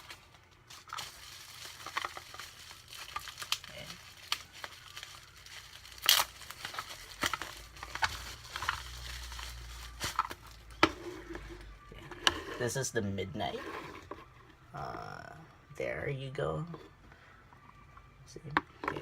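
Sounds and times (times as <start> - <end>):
plastic wrapping crinkling: 0.0 - 10.9.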